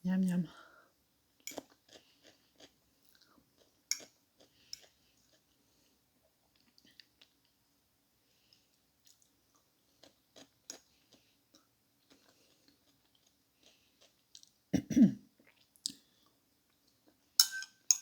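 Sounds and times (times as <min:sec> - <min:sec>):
soft chewing: 0:01.4 - 0:07.6, 0:08.3 - 0:14.7, 0:15.3 - 0:17.4.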